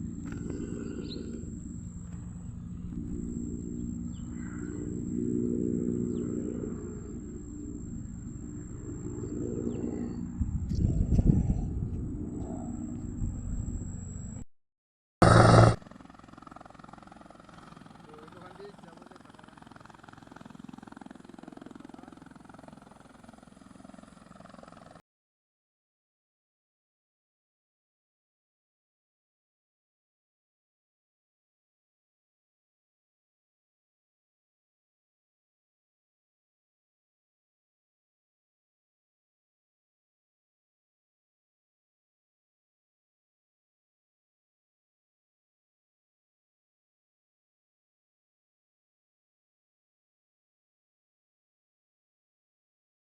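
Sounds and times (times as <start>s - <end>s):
low engine hum: 0.0s - 14.4s.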